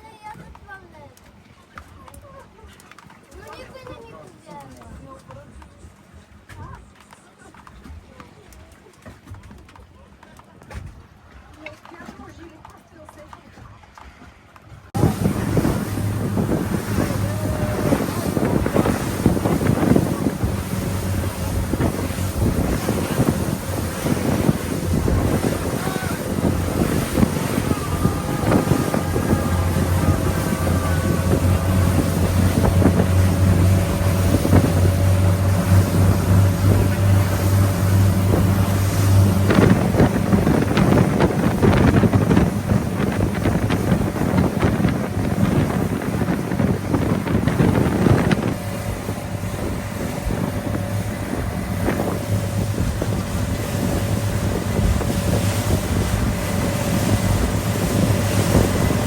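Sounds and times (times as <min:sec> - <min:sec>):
boat engine running: 0:14.6 - 0:59.0
wind buffeting microphone: 0:14.8 - 0:59.0
water rushing: 0:14.9 - 0:59.0.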